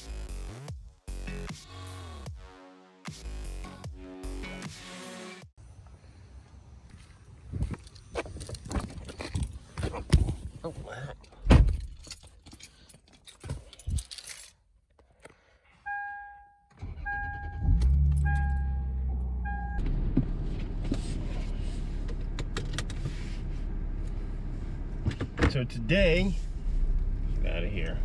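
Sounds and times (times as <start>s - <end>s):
keys jangling: 11.2s - 14.6s
dashboard warning chime: 15.8s - 19.8s
car engine starting and idling: 15.9s - 28.0s.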